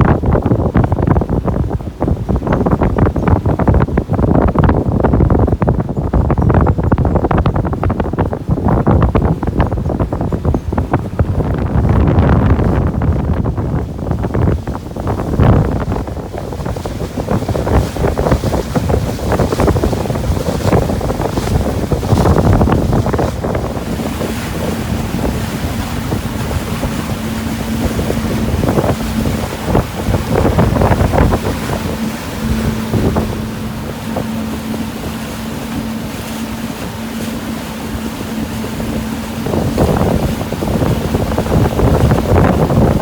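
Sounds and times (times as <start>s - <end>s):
boat motor running: 0.0s - 43.0s
wind buffeting microphone: 0.0s - 43.0s
steady hum: 15.2s - 43.0s.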